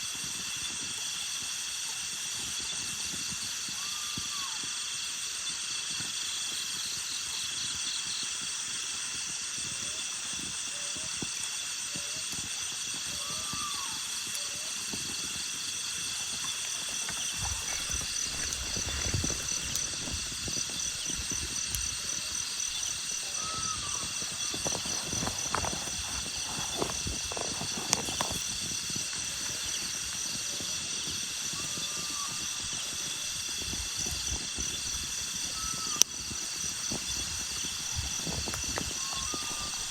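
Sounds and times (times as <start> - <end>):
night insects pulsing chorus: 0.0 - 39.9
short chirping calls: 16.2 - 27.4, 37.0 - 39.9.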